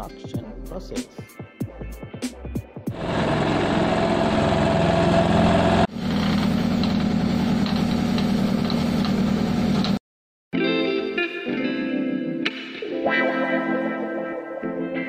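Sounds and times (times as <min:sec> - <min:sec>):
construction machine engine running: 0:02.9 - 0:10.0.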